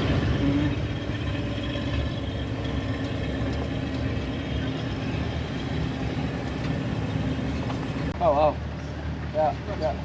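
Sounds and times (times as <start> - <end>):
vehicle engine rumbling: 0.0 - 10.0.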